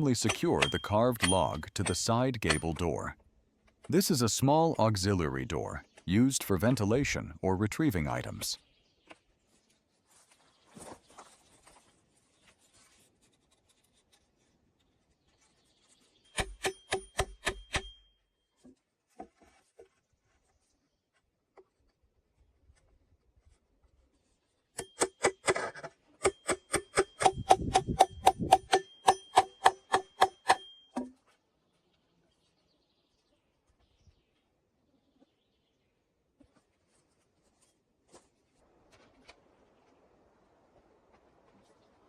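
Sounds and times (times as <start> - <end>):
hammering nails into wood: 26.2 - 30.7.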